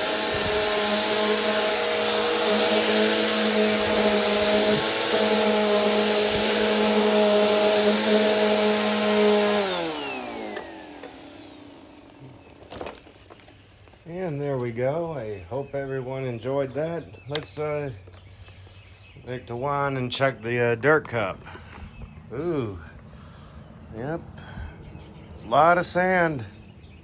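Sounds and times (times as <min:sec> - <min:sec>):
vacuum motor spinning down: 0:00.0 - 0:13.2
vacuum cleaner running: 0:00.0 - 0:13.5.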